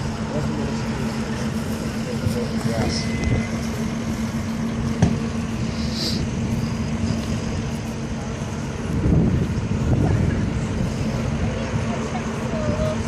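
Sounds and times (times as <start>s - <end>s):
vehicle engine idling: 0.0s - 13.0s.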